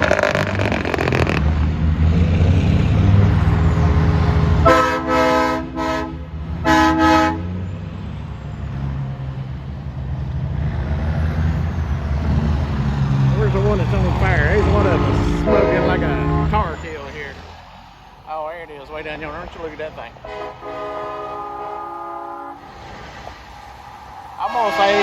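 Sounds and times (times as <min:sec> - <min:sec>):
truck engine humming: 0:00.0 - 0:10.8, 0:11.5 - 0:25.0
vehicle horn honking: 0:04.6 - 0:07.6, 0:14.6 - 0:16.7, 0:20.2 - 0:22.6, 0:24.4 - 0:25.0.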